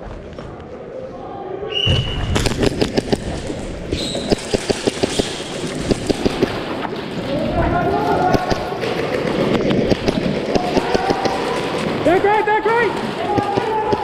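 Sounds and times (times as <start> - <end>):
airsoft guns firing: 2.4 - 7.2, 8.0 - 14.0.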